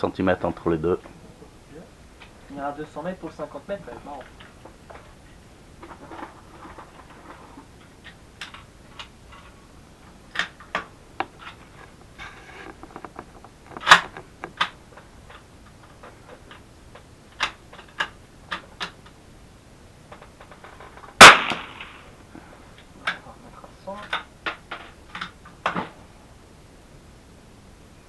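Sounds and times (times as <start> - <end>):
small clicks and knocks: 5.8 - 19.2, 20.1 - 21.2, 24.0 - 26.0
rifle shot: 21.2 - 22.2.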